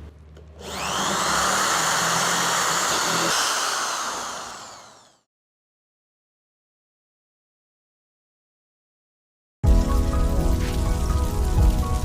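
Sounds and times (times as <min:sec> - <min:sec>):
electric drill motor whining: 0:00.6 - 0:05.3.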